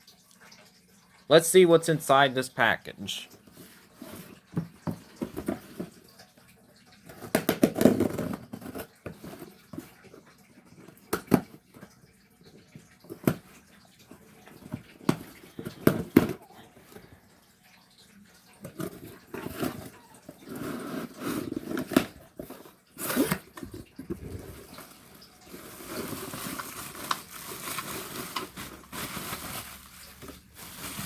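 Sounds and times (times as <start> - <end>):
packaging crinkling and rustling: 18.8 - 31.0.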